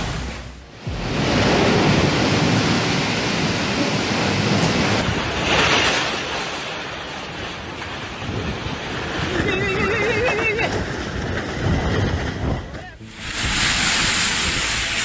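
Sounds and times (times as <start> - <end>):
strong wind: 0.0 - 6.0, 7.3 - 15.0
heavy surf: 0.0 - 15.0
wind buffeting microphone: 7.9 - 15.0
hissing surge: 13.0 - 15.0.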